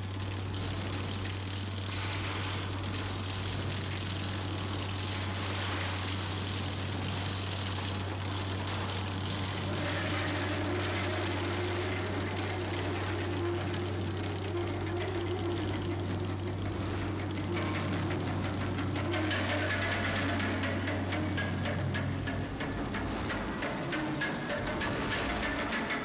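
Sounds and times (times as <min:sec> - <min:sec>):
low hum: 0:00.0 - 0:26.0
rough wall of noise: 0:00.0 - 0:26.0.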